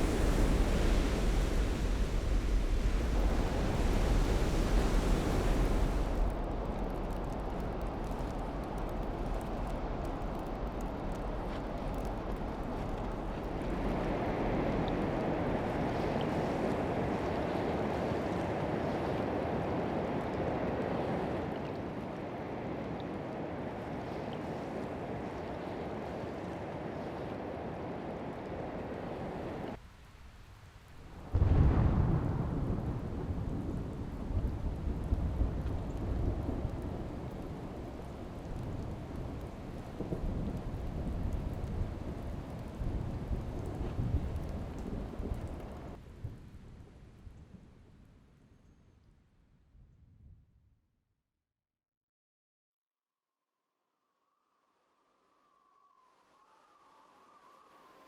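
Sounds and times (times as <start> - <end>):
rushing water: 0.0 - 46.0.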